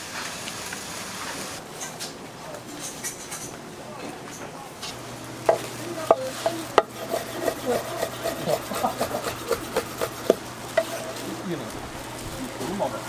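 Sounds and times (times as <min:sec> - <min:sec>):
utensils scraping cookware: 0:05.5 - 0:11.5.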